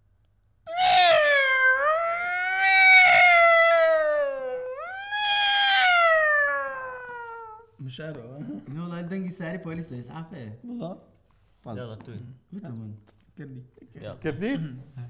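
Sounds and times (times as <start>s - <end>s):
cat-like yowling: 0.7s - 7.7s.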